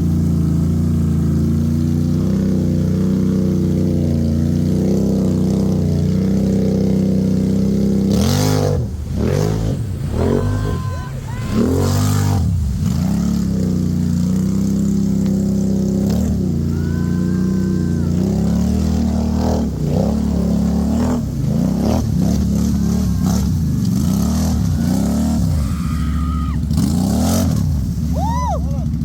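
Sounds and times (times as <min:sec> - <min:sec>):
atv engine revving: 0:00.0 - 0:29.0.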